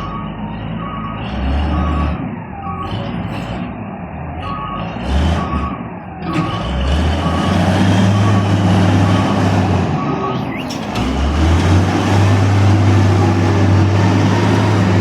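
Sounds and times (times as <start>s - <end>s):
reversing alarm beeps: 0.0s - 10.9s
heavy vehicle engine rumbling: 0.0s - 15.0s.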